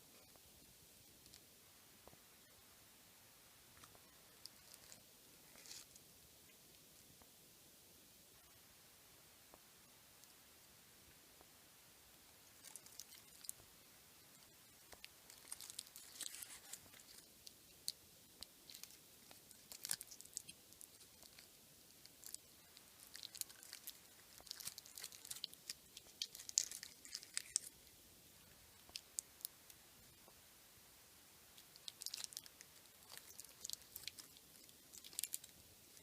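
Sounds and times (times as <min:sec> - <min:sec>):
packaging crinkling and rustling: 0:15.0 - 0:17.3, 0:23.0 - 0:27.8, 0:31.8 - 0:35.5.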